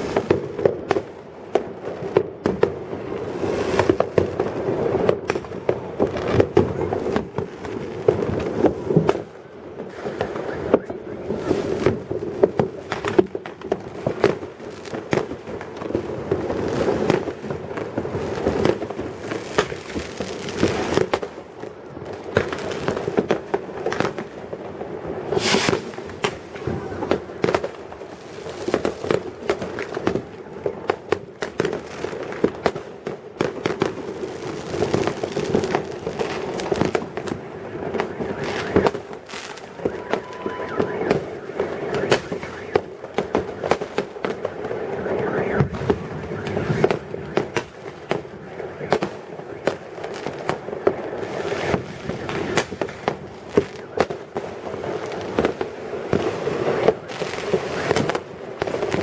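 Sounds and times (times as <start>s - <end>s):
fireworks popping and crackling: 0.0s - 59.0s
loud close firework burst: 25.2s - 30.3s, 33.4s - 59.0s.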